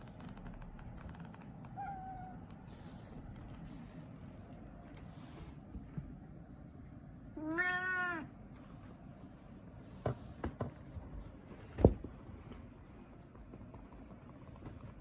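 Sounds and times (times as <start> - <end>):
cat meowing: 1.8 - 2.5, 7.4 - 8.3.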